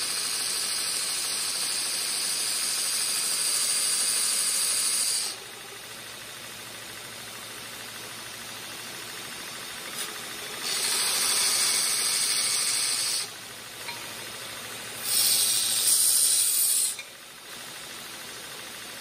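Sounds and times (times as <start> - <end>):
belt grinder running: 0.0 - 18.8
metal grinding hiss: 9.9 - 13.3, 15.0 - 17.1.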